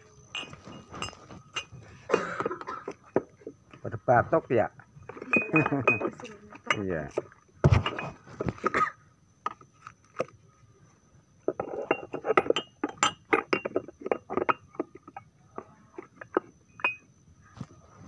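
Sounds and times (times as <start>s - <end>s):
glassware clinking: 0.3s - 3.0s, 5.1s - 8.2s, 11.5s - 15.2s, 16.2s - 17.1s.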